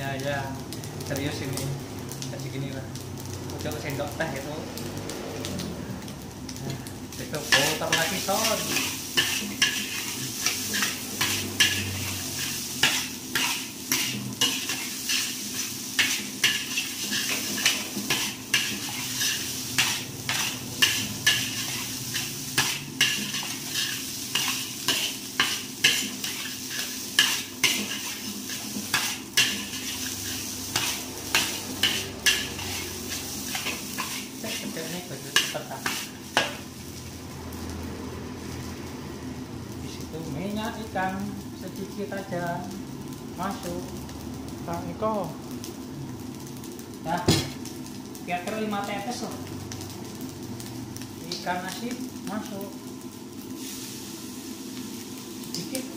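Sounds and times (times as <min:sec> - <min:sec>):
food sizzling: 0:00.0 - 0:55.9
spatula scraping a wok: 0:07.4 - 0:36.8.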